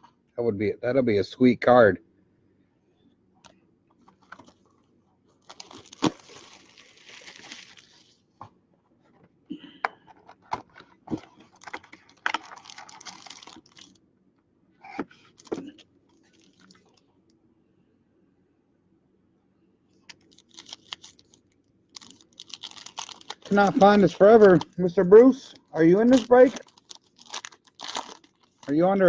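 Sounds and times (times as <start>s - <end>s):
plastic wrappers crinkling and tearing: 5.4s - 8.2s, 11.3s - 14.0s, 15.3s - 17.0s, 20.1s - 29.0s.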